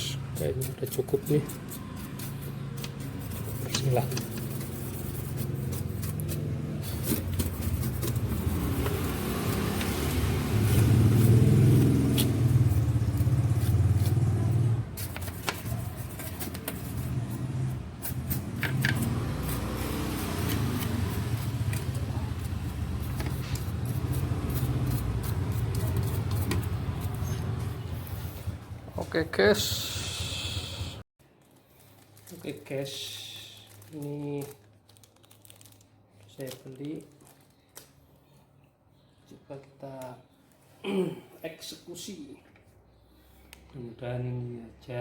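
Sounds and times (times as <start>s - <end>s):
motor vehicle low rumble: 1.7s - 31.0s.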